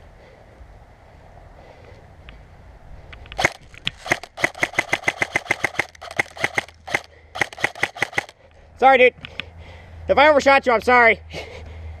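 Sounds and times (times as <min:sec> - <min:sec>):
airsoft gun firing: 0:03.4 - 0:08.3.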